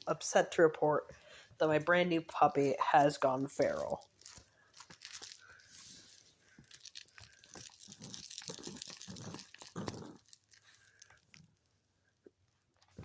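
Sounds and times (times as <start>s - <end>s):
crinkly material crackling: 2.2s - 13.0s
puppy growling: 7.9s - 10.4s.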